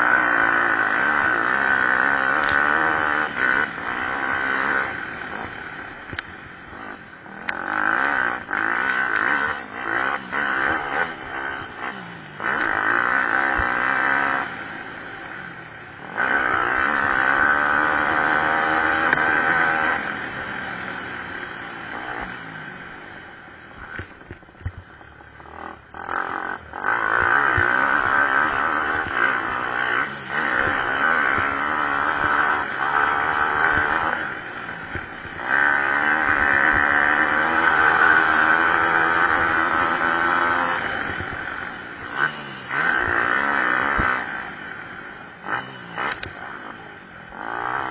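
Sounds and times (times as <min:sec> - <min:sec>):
pit bike engines revving: 0:00.0 - 0:47.9.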